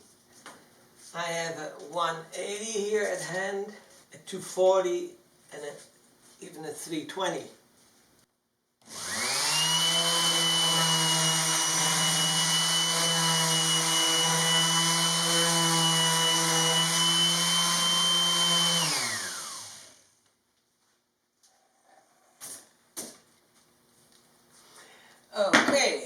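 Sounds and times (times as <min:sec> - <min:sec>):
electric sander whining: 0:08.9 - 0:20.0.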